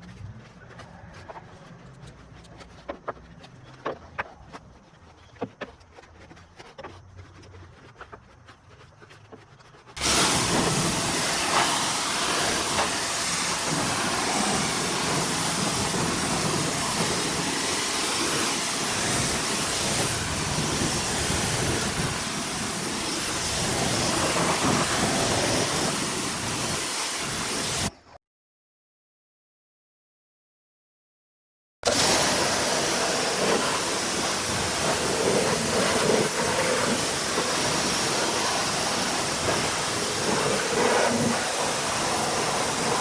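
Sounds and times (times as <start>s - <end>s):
pressure washer spraying water: 9.9s - 27.9s, 31.9s - 43.0s.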